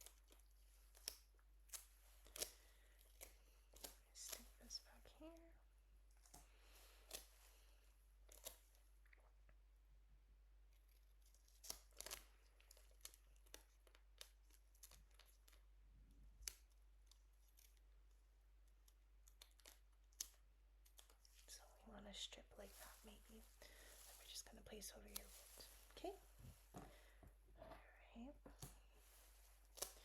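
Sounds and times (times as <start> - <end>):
scissors snipping: 0.0 - 4.8.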